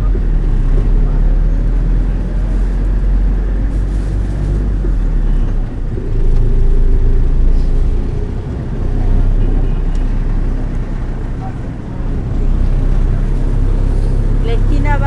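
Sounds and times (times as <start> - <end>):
bus engine rumbling: 0.0 - 15.0.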